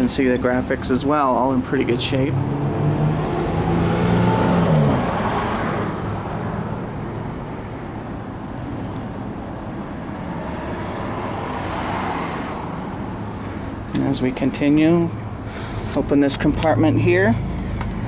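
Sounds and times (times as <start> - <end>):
steady traffic noise: 0.0 - 18.0
vehicle passing by: 0.5 - 7.4, 10.0 - 13.9.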